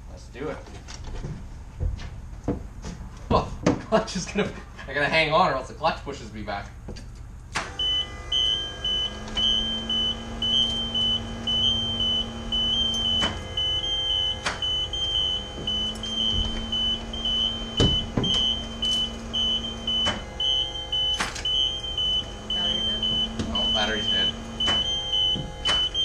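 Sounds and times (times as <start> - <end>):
low hum: 5.6 - 26.0
warning buzzer beeping: 7.7 - 26.0.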